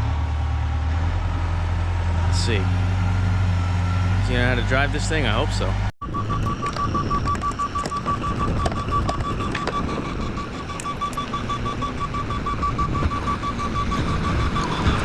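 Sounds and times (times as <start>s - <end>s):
engine rumble: 0.0s - 15.0s
back-up alarm beeping: 6.0s - 15.0s.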